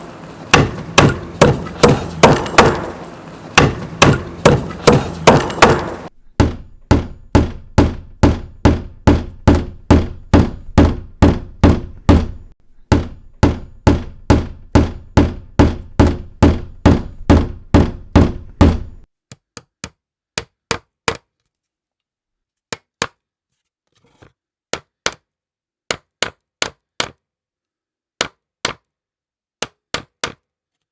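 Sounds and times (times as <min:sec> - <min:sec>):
hammer striking: 0:00.0 - 0:19.0.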